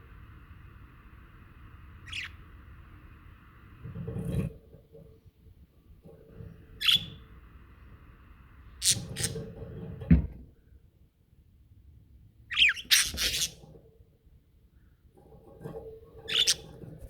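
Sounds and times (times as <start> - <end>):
budgerigars squawking and chirping: 2.1 - 2.4, 8.8 - 9.4, 12.5 - 13.6, 16.3 - 16.6.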